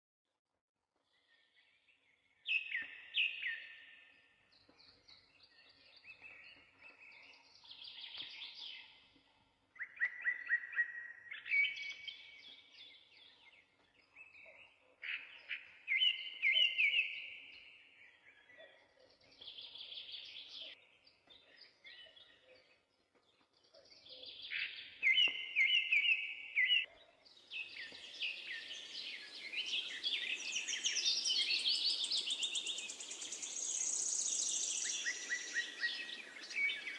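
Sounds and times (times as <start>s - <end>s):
songbird trilling and warbling: 9.8s - 22.8s, 23.5s - 36.9s.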